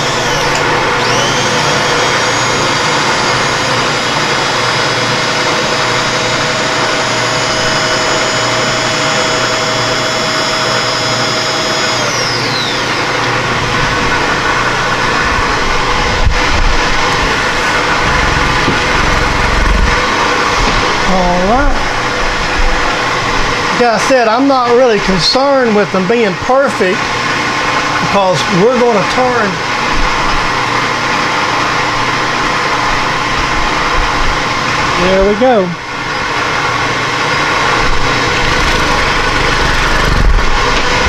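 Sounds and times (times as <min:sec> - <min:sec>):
electric motor whining: 0:00.0 - 0:23.8, 0:31.8 - 0:41.0
low rumbling noise: 0:13.1 - 0:23.7, 0:37.6 - 0:41.0.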